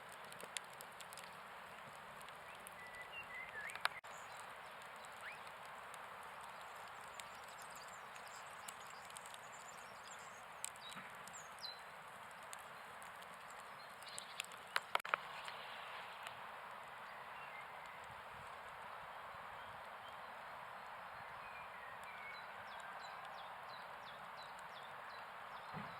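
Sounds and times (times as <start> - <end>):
sharp clicks: 0.0 - 1.4, 2.2 - 15.6.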